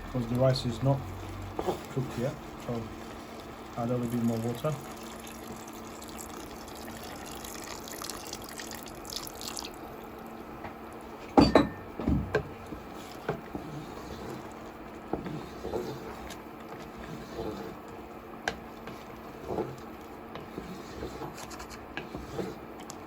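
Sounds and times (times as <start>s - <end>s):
water running and splashing: 2.2s - 9.8s
cookware clanking: 11.4s - 12.5s.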